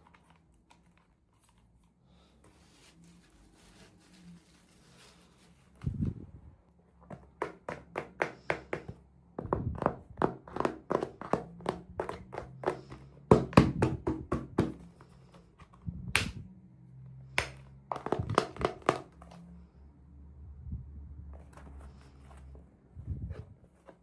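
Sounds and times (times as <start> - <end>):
plastic items tapping and clicking: 7.1 - 14.9, 17.4 - 19.4.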